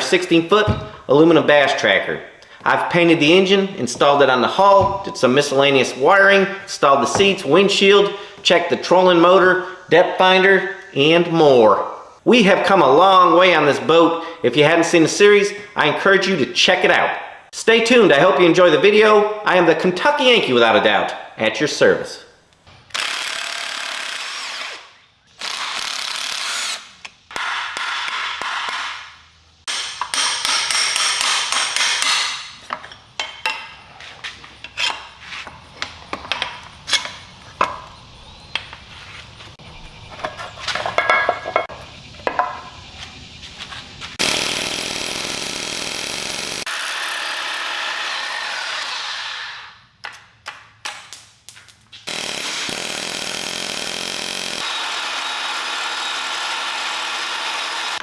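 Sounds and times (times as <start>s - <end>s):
power tools running: 44.2s - 49.7s, 52.1s - 58.0s
clicks and knocks of hand work: 50.0s - 52.0s.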